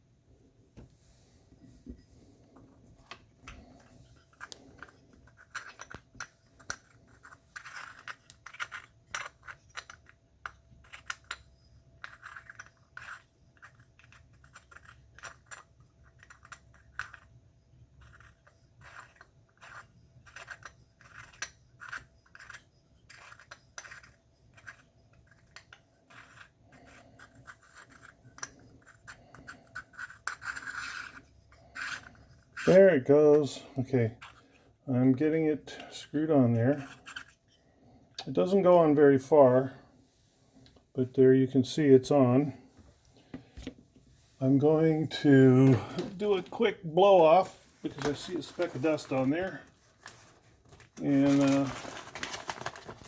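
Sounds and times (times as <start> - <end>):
metal threads scraping and clicking: 2.5 - 38.4.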